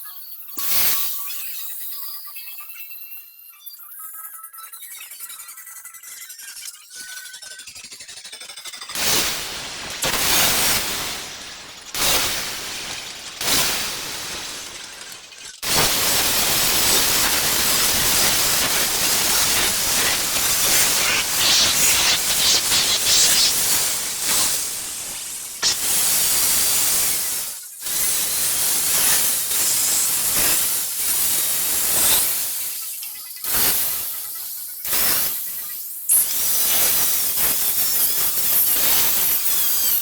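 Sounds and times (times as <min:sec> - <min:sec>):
power tool cutting wood: 0:15.7 - 0:26.0.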